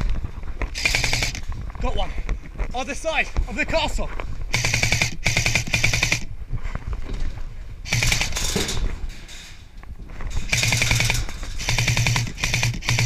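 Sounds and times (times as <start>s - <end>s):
airsoft rifle full-auto fire: 0.8s - 1.4s, 4.5s - 6.3s, 7.8s - 8.6s, 10.5s - 13.0s.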